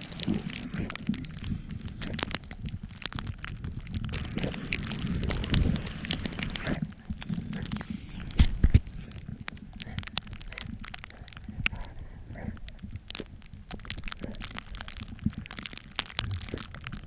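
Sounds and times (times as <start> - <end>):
crunching in snow: 4.1 - 9.1.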